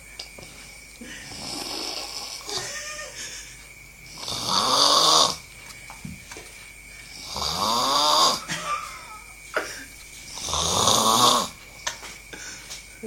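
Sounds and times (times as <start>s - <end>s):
person snoring: 1.2s - 2.6s, 4.1s - 5.4s, 7.1s - 9.2s, 10.3s - 11.6s.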